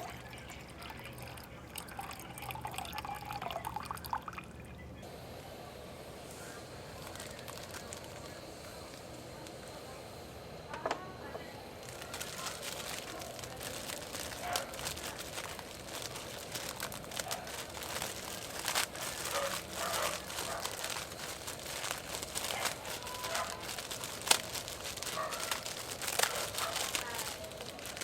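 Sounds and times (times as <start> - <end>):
crinkling and rustling: 6.9 - 10.0, 10.7 - 28.0.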